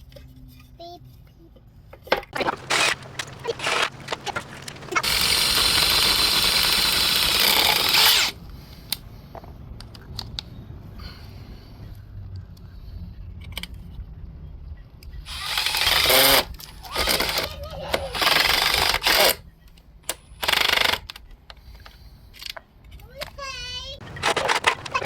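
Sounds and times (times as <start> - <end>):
power drill running: 2.4 - 8.4, 15.3 - 17.5, 18.1 - 19.4.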